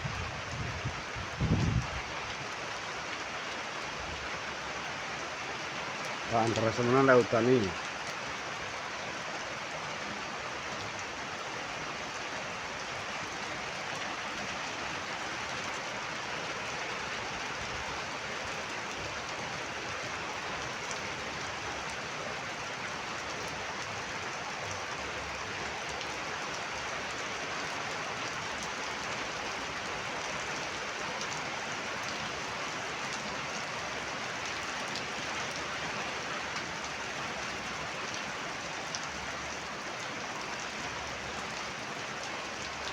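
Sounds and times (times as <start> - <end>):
heavy rain falling: 0.0 - 42.9.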